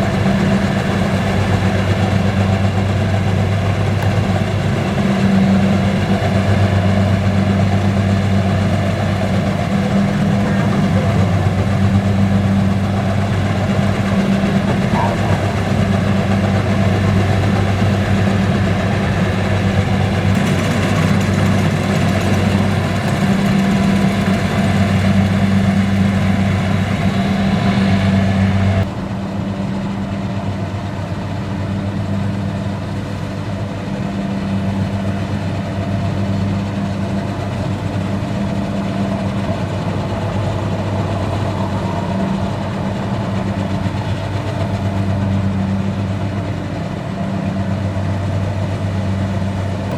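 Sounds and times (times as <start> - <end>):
combine harvester engine drone: 0.0 - 49.9.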